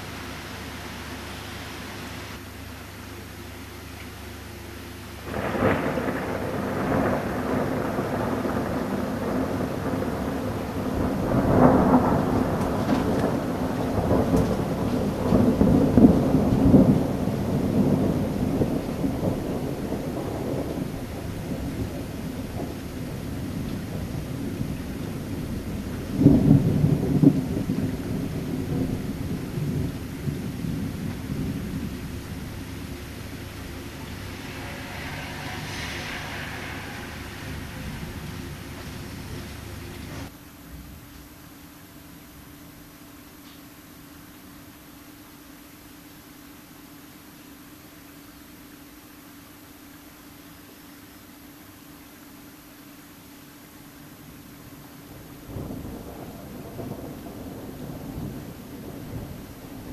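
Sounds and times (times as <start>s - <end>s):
rain hiss: 0.0s - 59.9s
thunder rumbling: 5.2s - 41.0s, 54.1s - 59.9s.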